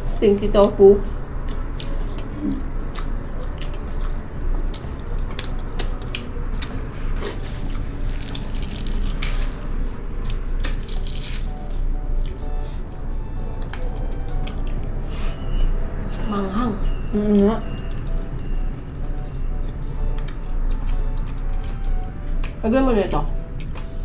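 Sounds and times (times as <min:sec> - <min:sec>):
crunchy bites and wet chewing: 0:02.9 - 0:13.0.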